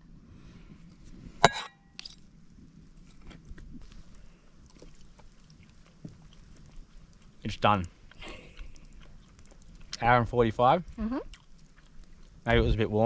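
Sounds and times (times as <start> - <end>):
metal clinking on iron pot: 1.4 - 2.2.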